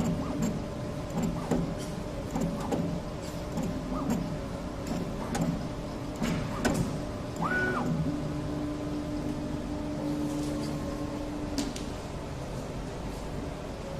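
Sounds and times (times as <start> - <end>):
robot motors humming: 0.0 - 13.9
steady hum: 0.0 - 13.9
high motor whine: 3.7 - 12.8.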